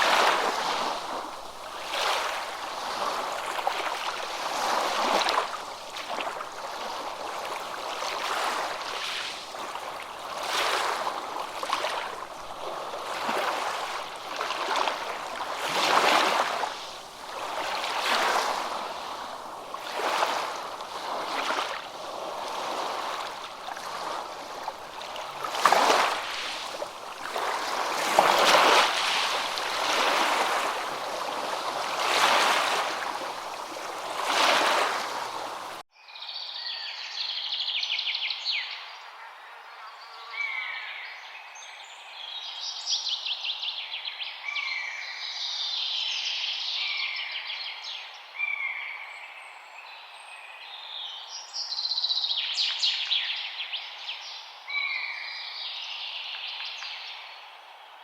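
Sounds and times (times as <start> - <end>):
small waves washing in: 0.0 - 35.8.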